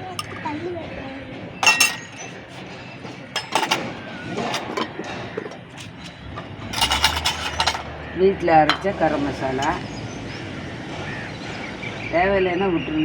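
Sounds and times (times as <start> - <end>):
spoon clinking on steel bowl: 0.0 - 0.5, 1.6 - 9.9.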